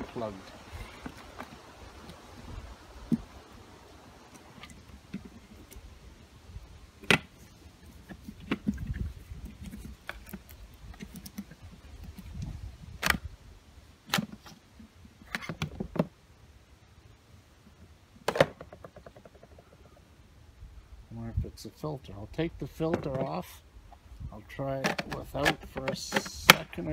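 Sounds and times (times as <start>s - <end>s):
plastic clicks and knocks: 18.3s - 19.7s, 24.8s - 26.8s.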